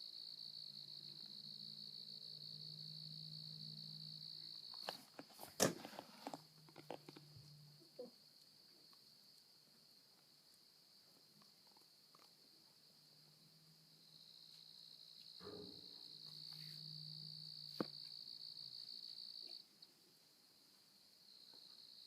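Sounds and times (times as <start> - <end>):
insects trilling: 0.0 - 20.2, 21.0 - 22.0.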